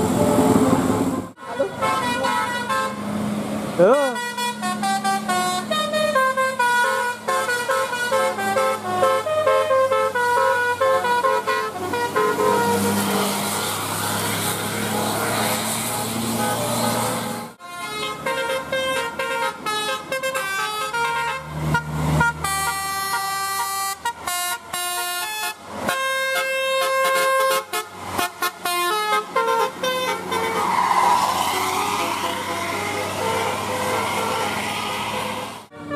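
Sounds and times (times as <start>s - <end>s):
bus engines running: 0.0s - 35.9s
multi-tone air horns playing a tune: 1.4s - 3.1s, 3.9s - 30.8s.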